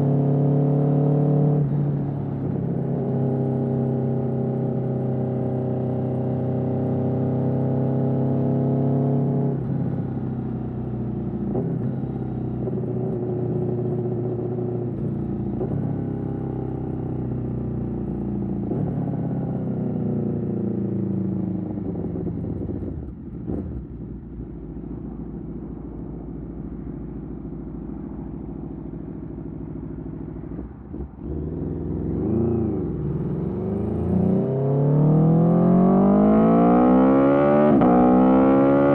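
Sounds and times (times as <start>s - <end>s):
motorcycle engine revving: 27.9s - 38.9s.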